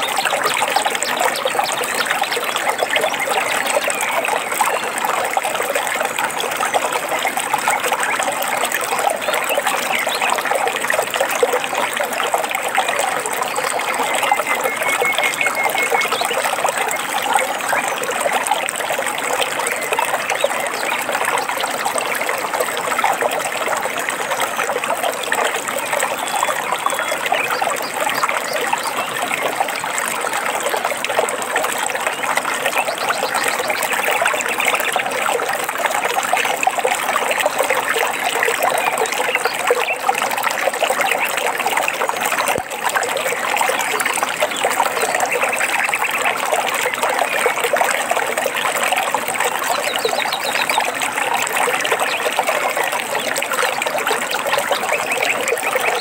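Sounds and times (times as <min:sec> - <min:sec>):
water trickling and babbling: 0:00.0 - 0:56.0
faint bird chirps: 0:13.5 - 0:17.9.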